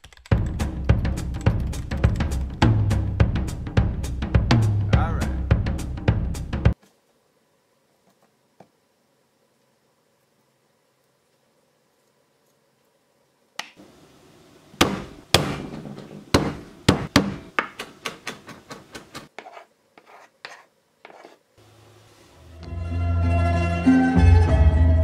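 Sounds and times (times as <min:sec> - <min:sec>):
music: 0:00.3 - 0:06.8, 0:22.5 - 0:25.0.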